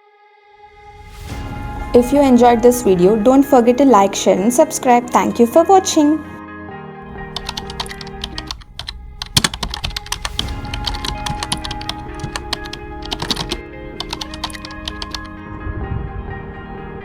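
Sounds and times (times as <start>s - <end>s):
background music with held notes: 0.0s - 17.0s
keyboard typing clicks: 7.2s - 15.3s.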